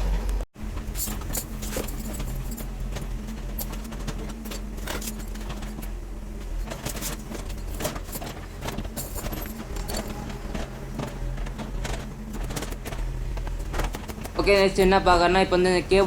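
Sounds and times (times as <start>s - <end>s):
low mechanical hum: 0.0s - 16.0s
metal tools clinking and knocking: 6.6s - 13.0s.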